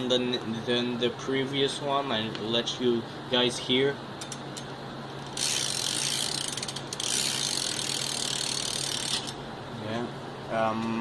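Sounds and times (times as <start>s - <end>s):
bicycle hub ratcheting buzz: 4.2s - 9.4s.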